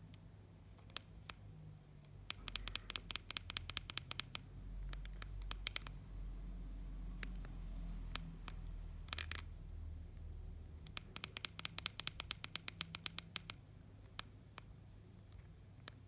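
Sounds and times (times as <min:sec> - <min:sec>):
phone buttons clicking: 0:02.2 - 0:06.0, 0:10.8 - 0:14.7.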